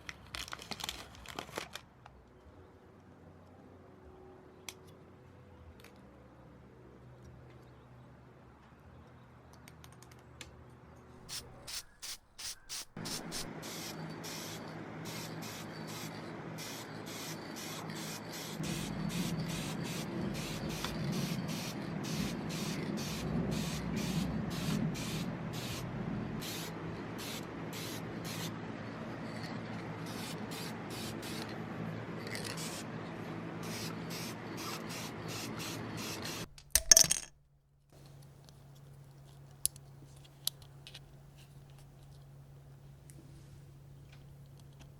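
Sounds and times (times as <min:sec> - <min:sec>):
spray paint hissing: 0:11.3 - 0:28.6, 0:30.0 - 0:31.5, 0:32.3 - 0:32.8, 0:33.6 - 0:36.5.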